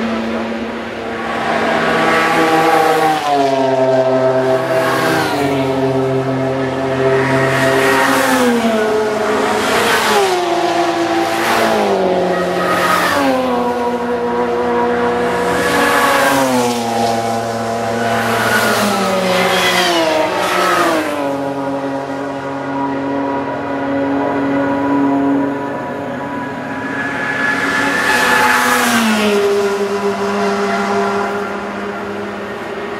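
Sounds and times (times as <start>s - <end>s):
race cars passing at high speed: 0.0s - 32.9s.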